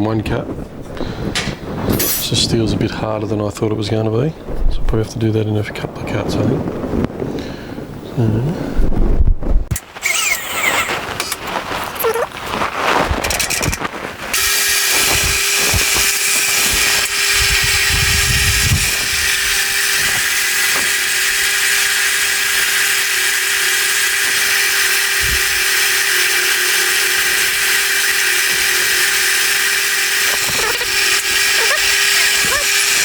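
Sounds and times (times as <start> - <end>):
milling machine cutting steel: 1.4 - 2.5, 9.7 - 12.2, 13.2 - 33.0.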